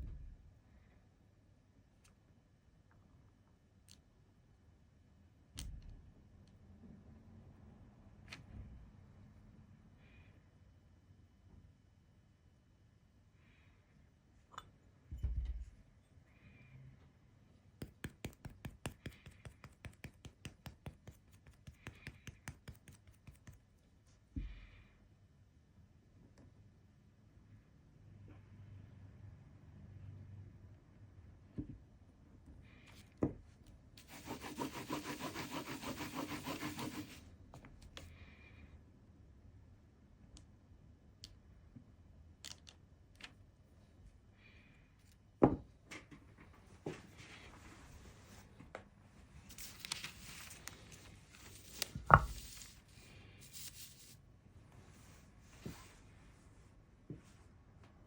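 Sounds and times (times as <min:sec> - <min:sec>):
stamping tools clicking on desk: 0:17.8 - 0:23.6.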